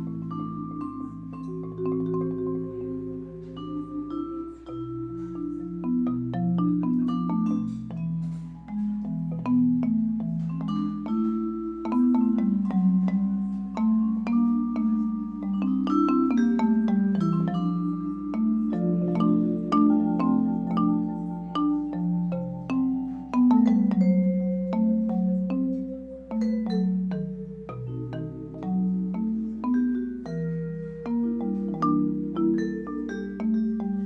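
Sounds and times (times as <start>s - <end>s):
mallet melody of struck notes: 0.0s - 34.0s.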